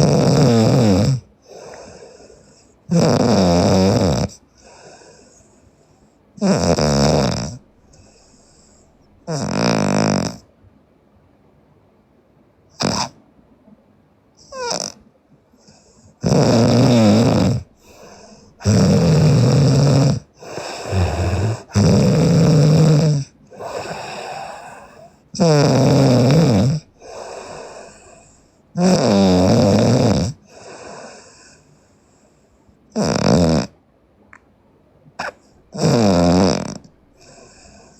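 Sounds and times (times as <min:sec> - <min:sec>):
girl snoring loudly: 0:00.0 - 0:01.8, 0:02.9 - 0:04.4, 0:06.4 - 0:10.5, 0:12.8 - 0:13.2, 0:14.4 - 0:15.0, 0:16.2 - 0:31.3, 0:32.9 - 0:33.8, 0:35.2 - 0:37.9
quiet breaths: 0:00.0 - 0:10.8, 0:12.6 - 0:34.4, 0:35.0 - 0:37.9.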